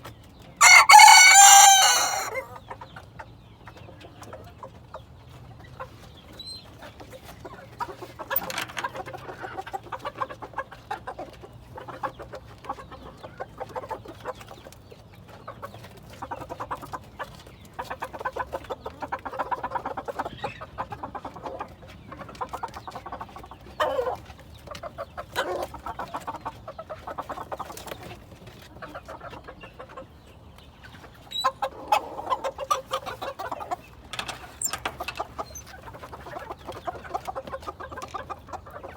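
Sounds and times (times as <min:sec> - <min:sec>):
chickens clucking: 0:00.1 - 0:38.9.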